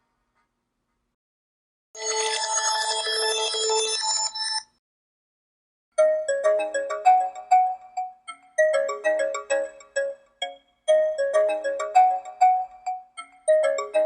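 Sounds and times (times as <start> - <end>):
phone ringtone melody: 6.0 - 14.0.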